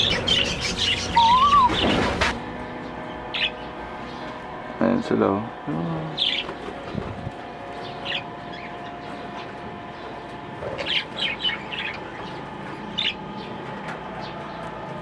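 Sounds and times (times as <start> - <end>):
budgerigars chirping: 0.0 - 2.3, 3.3 - 4.2, 6.2 - 6.6, 7.8 - 13.2.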